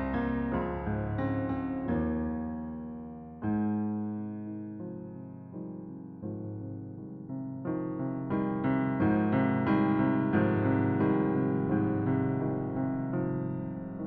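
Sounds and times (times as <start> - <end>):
piano chords: 0.0 - 14.0.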